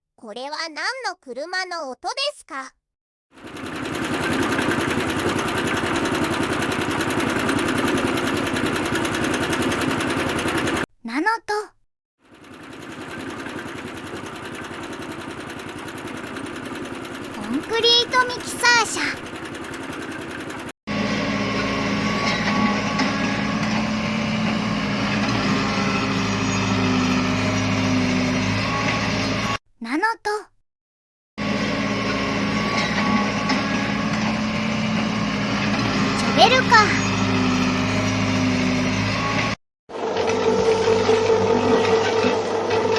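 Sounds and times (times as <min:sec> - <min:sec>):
diesel engine running: 0:03.4 - 0:10.8, 0:12.6 - 0:29.3, 0:31.4 - 0:39.6.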